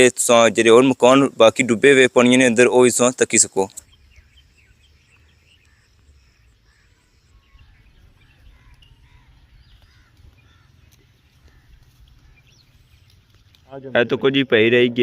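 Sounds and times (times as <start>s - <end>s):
faint birds chirping: 0.0s - 15.0s.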